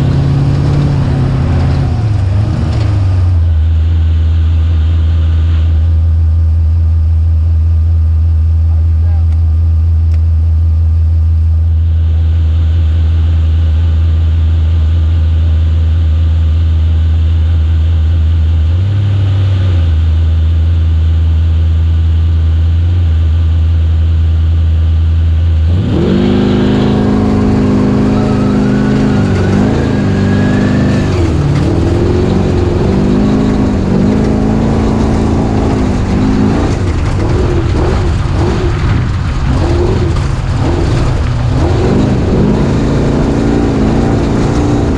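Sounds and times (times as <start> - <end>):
engine idling and revving: 0.0 - 44.9
thin climbing whine: 25.6 - 44.9.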